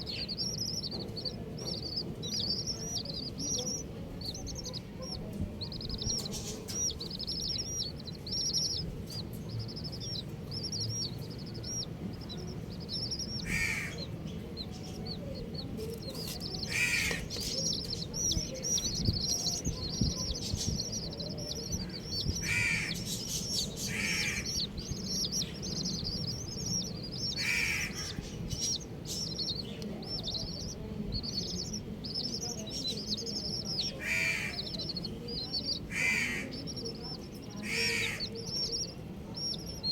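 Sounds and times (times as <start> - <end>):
baby chicks peeping: 0.0 - 39.9
louder harsh chick calls: 12.9 - 14.2, 16.6 - 20.3, 20.9 - 29.6, 33.5 - 35.0, 35.6 - 36.8, 37.5 - 38.6.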